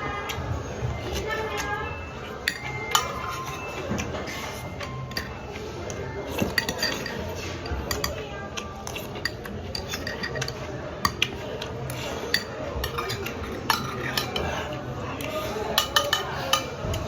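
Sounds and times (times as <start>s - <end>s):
utensils clinking against a bowl: 0.0s - 17.0s.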